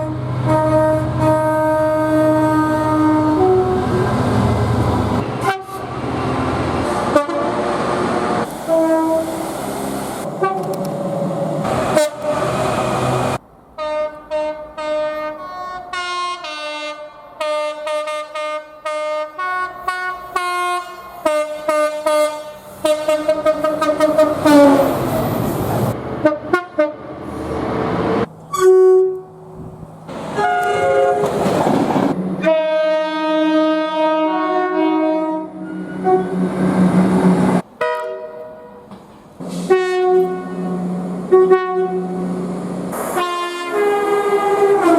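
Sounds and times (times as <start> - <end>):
train horn blasts: 0.0 - 4.1, 5.2 - 6.0, 6.9 - 7.8, 8.6 - 9.4, 10.4 - 10.8, 11.7 - 12.5, 13.8 - 25.0, 26.2 - 27.1, 28.5 - 29.4, 30.3 - 31.4, 32.4 - 36.6, 37.8 - 42.2, 43.1 - 44.9
train running past: 0.0 - 15.4, 19.8 - 44.9.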